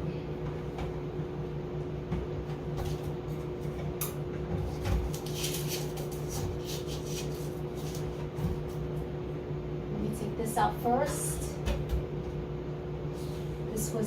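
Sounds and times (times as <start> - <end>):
steady low hum: 0.0 - 14.0
items knocking and rustling: 4.5 - 6.7.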